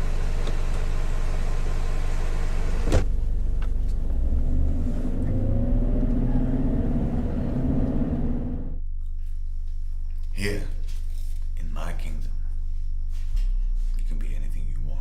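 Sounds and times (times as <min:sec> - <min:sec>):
car engine accelerating: 0:00.0 - 0:08.8.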